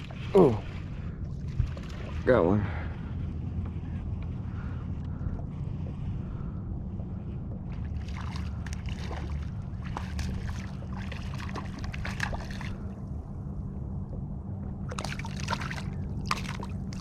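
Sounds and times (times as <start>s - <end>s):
steady low rumble: 0.0s - 17.0s
fish splashing in water: 8.0s - 12.8s, 14.9s - 17.0s.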